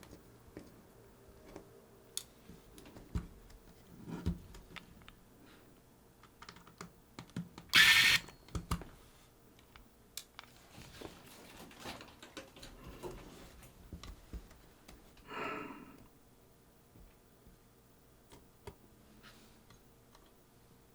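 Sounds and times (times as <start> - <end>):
small parts and tools clicking: 6.3 - 8.7.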